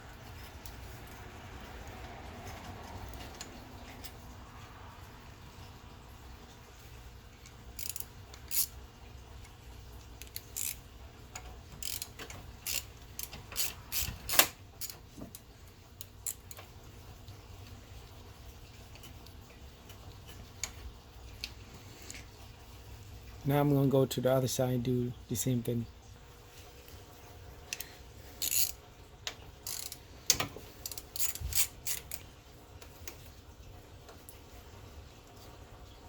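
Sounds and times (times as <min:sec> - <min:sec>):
socket ratchet clicking: 0:07.8 - 0:08.7, 0:10.2 - 0:10.8, 0:11.8 - 0:15.0, 0:28.4 - 0:28.8, 0:29.6 - 0:32.2.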